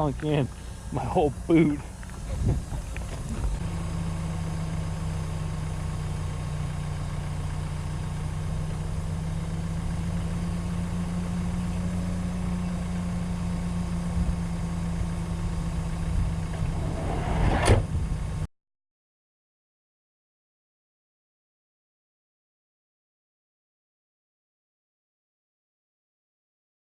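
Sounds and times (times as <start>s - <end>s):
diesel engine idling: 0.0s - 18.5s.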